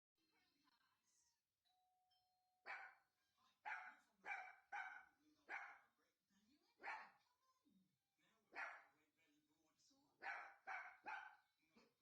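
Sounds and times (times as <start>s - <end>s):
doorbell chime from tv: 1.6s - 3.2s
puppy barking: 2.7s - 3.0s, 3.6s - 5.9s, 6.8s - 7.2s, 8.5s - 8.9s, 10.2s - 11.5s.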